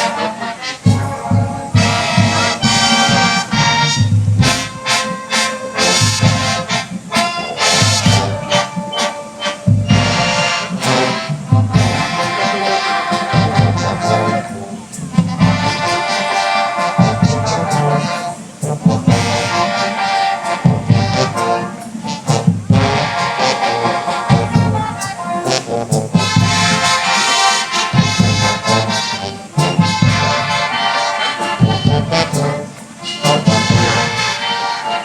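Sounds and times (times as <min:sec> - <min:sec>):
brass band playing a ballad: 0:00.0 - 0:35.0.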